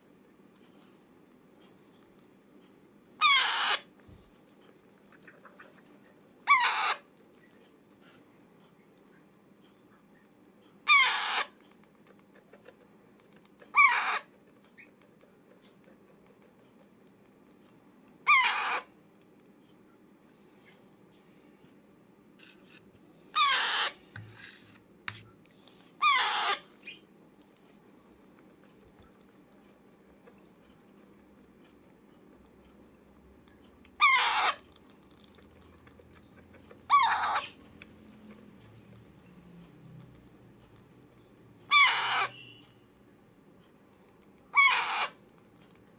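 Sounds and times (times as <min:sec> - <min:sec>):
parakeet harsh calls: 0:03.2 - 0:03.9, 0:06.4 - 0:07.0, 0:10.9 - 0:11.5, 0:13.7 - 0:14.3, 0:18.2 - 0:18.9, 0:23.3 - 0:24.0, 0:26.0 - 0:27.0, 0:34.0 - 0:34.6, 0:36.9 - 0:37.6, 0:41.6 - 0:42.6, 0:44.5 - 0:45.2.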